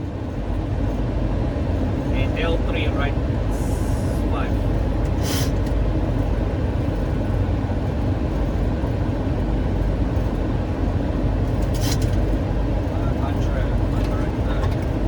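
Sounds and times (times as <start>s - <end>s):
aircraft cockpit rumble: 0.0s - 15.0s.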